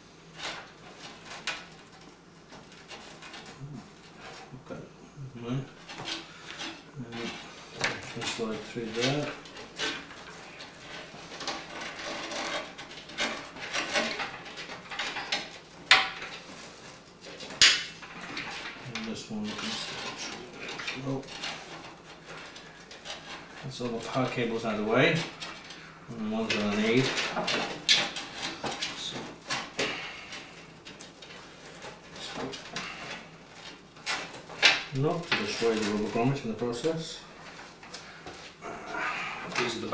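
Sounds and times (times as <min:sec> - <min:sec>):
cables rubbing through rubber grommet: 0:00.0 - 0:39.9.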